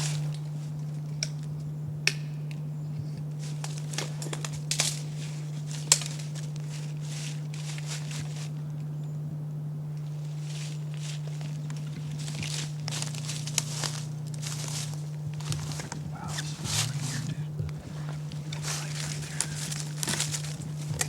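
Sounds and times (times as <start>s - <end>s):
steady low hum: 0.0s - 21.0s
rustling of gear: 10.2s - 21.0s.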